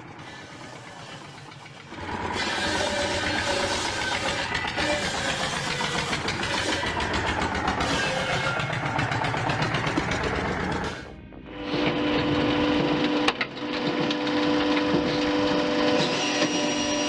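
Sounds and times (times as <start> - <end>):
saw rattling: 0.3 - 11.2.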